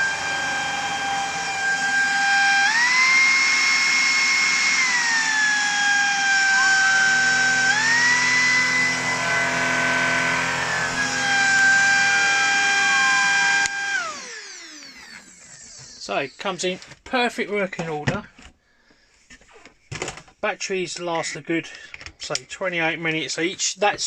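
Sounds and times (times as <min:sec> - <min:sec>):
low buzz: 0:00.0 - 0:15.5
vacuum cleaner whining: 0:00.0 - 0:16.8.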